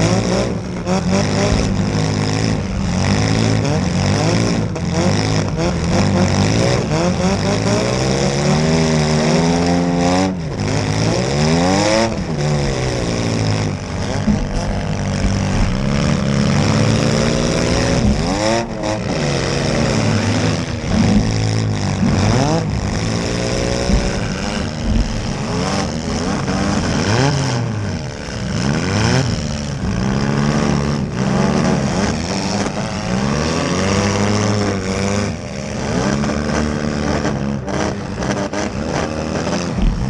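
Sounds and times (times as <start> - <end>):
car engines revving hard: 0.0 - 40.0
cars colliding bangs: 12.2 - 27.9.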